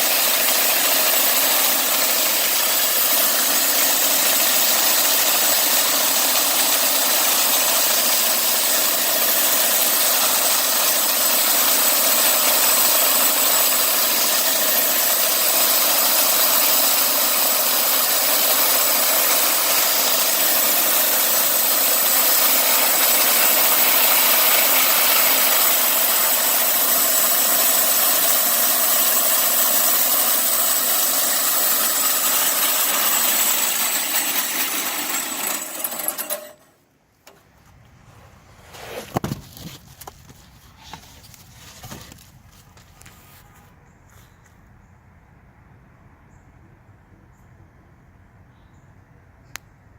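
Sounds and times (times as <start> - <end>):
bandsaw mill cutting a log: 0.0 - 36.7.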